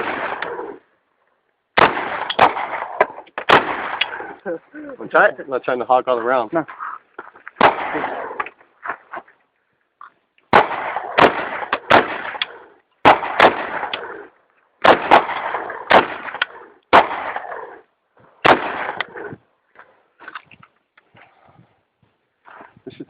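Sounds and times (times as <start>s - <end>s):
gunshots echoing: 0.0s - 0.8s, 1.8s - 4.4s, 7.6s - 8.5s, 10.5s - 17.8s, 18.4s - 19.3s.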